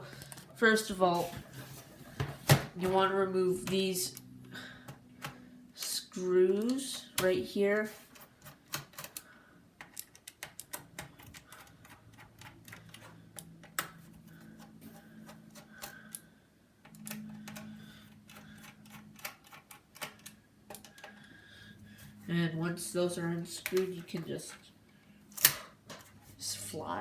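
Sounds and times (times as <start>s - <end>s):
screwdriver clicking on screws: 16.9s - 21.3s.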